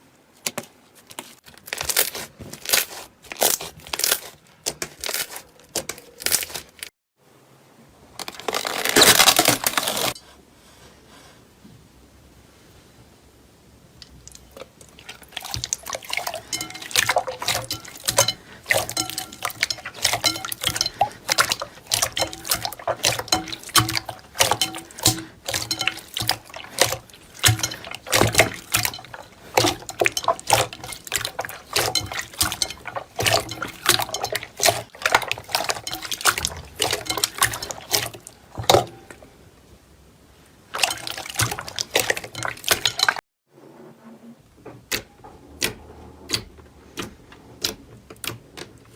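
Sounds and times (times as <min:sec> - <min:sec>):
slime squishing: 0:00.4 - 0:06.9, 0:14.0 - 0:39.2, 0:40.7 - 0:43.2.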